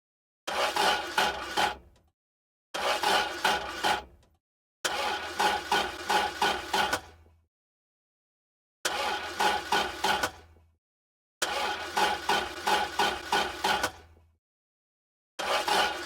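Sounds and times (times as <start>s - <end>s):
car engine cranking: 8.9s - 10.4s.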